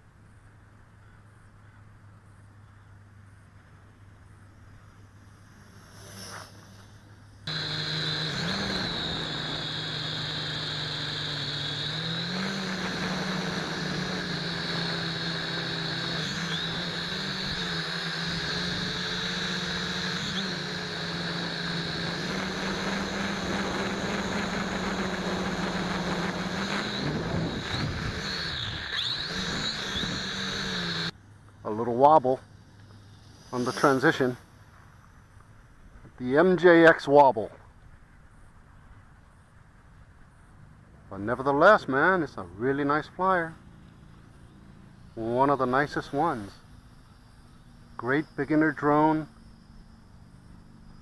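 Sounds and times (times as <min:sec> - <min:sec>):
quadcopter motors whining: 0:05.0 - 0:31.2, 0:32.0 - 0:35.5, 0:44.4 - 0:51.0.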